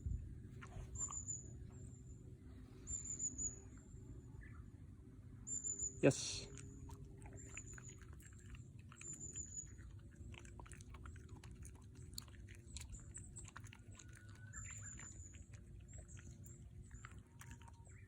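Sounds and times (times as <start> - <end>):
dog chewing a treat: 0.5 - 1.7, 6.4 - 18.0.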